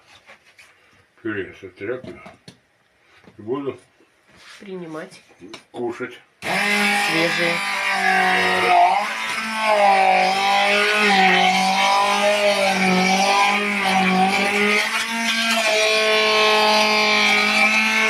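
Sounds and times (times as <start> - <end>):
electric blender whirring: 6.4 - 18.0.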